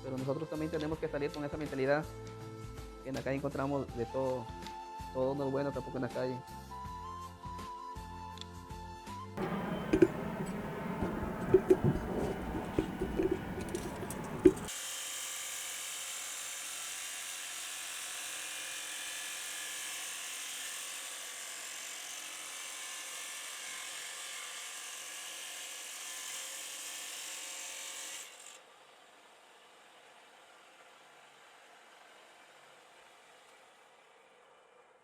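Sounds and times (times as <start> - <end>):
low knocks: 9.4 - 14.7.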